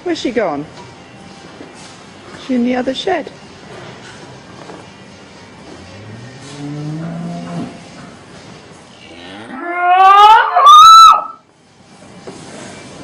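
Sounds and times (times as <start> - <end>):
cow mooing: 5.9 - 8.0, 9.0 - 11.4.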